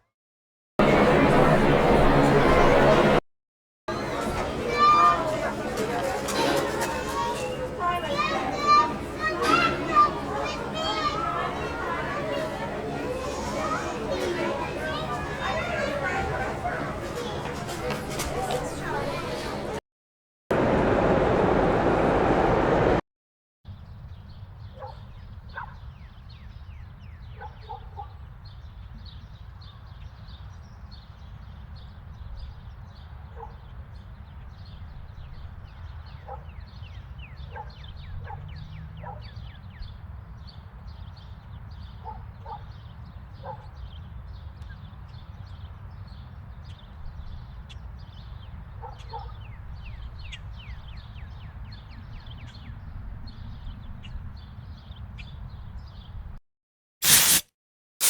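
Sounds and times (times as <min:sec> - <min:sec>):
small birds chirping: 0:23.8 - 0:56.2.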